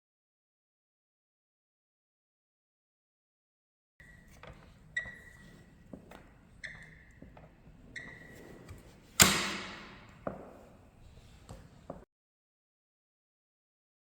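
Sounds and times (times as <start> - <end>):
office chair backrest squeaking: 4.0 - 12.0.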